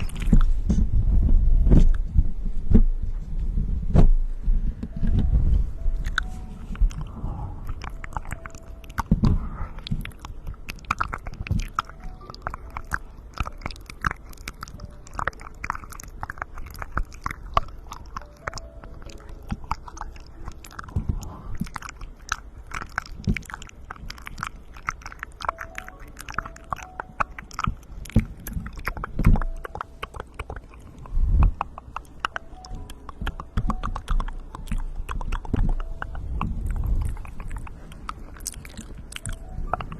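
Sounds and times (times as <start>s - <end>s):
wet lip and tongue clicks: 0.0s - 0.8s, 6.0s - 39.9s
low thumps: 0.2s - 6.2s.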